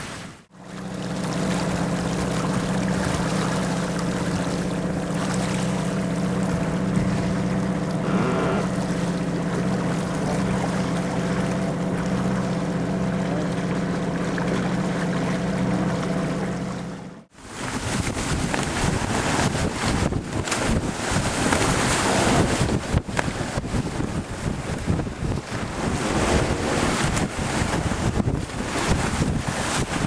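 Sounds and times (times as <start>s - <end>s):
water noise: 0.0s - 30.0s
boat engine running: 0.5s - 30.0s
wind noise: 17.7s - 30.0s.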